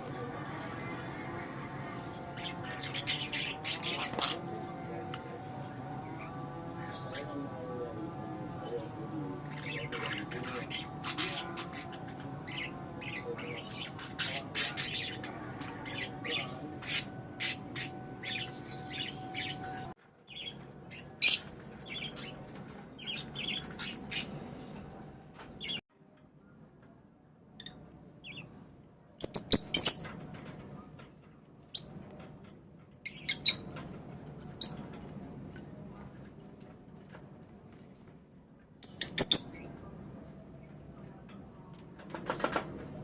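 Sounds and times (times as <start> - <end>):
baby budgerigars chirping: 0.6 - 5.3, 8.7 - 24.4, 29.2 - 30.2, 33.1 - 33.7, 38.8 - 39.7.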